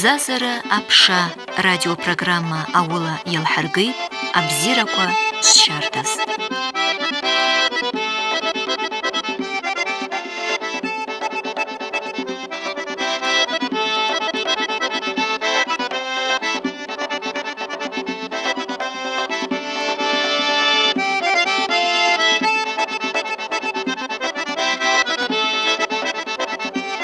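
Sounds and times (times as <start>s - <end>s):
accordion folk tune: 0.0s - 27.0s.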